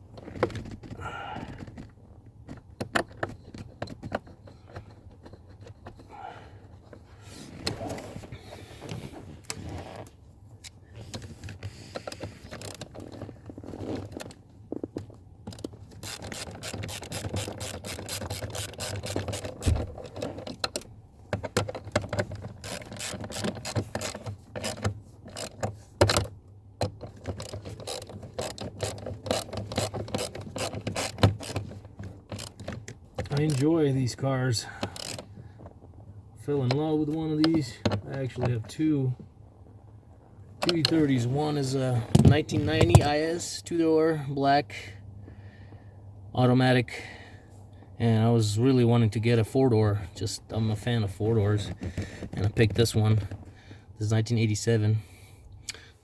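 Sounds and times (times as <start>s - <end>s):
handling clicks and scrapes: 0.0s - 43.8s, 50.0s - 54.7s
ratchet clicking: 15.5s - 19.8s, 22.6s - 26.2s, 27.3s - 31.7s, 32.3s - 33.6s, 34.8s - 35.2s.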